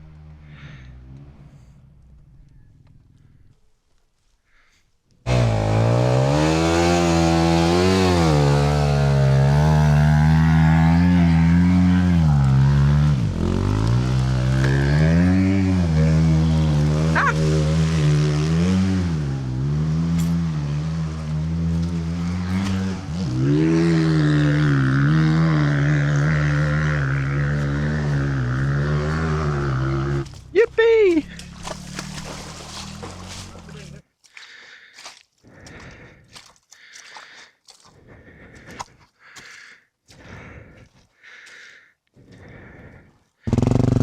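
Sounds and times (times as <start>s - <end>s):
person breathing hard: 0.4s - 1.8s, 34.2s - 43.6s
dirt bike engine running: 5.3s - 34.0s, 43.5s - 44.0s.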